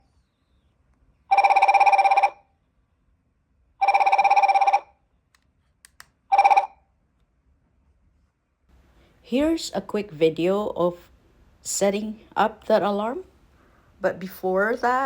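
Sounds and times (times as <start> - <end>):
electronic alarm trill: 1.3 - 2.4, 3.8 - 4.9, 6.3 - 6.8.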